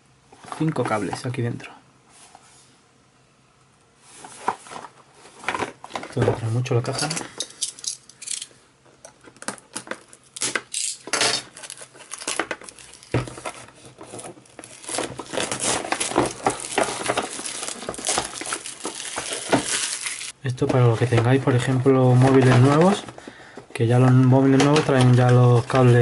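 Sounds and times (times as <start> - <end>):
packaging crinkling and rustling: 9.2 - 26.0.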